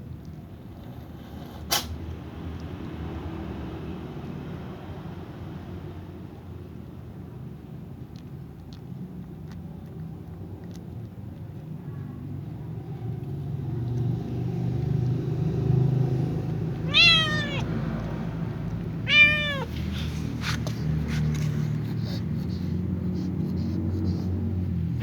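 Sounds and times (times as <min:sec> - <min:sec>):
cat meowing: 0:16.8 - 0:18.1, 0:18.9 - 0:20.1.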